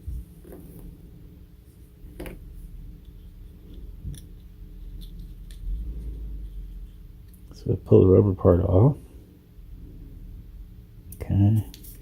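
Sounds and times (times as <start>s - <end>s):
soft rubbing of plastic parts: 0.0s - 7.7s, 11.5s - 12.0s
steady low hum: 0.0s - 12.0s.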